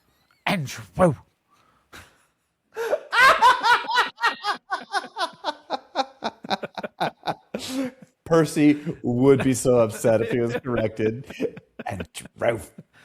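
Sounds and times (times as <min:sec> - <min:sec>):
hearty human laughter: 0:02.0 - 0:08.2, 0:08.8 - 0:13.0.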